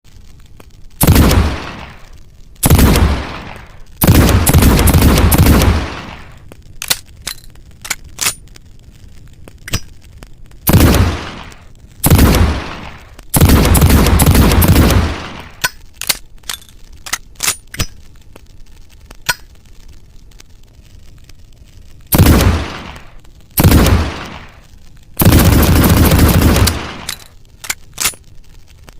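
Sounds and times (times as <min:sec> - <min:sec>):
metallic clicks of gun action: 0:06.8 - 0:08.4, 0:09.6 - 0:10.0, 0:15.6 - 0:18.0, 0:19.2 - 0:19.6, 0:26.6 - 0:28.3.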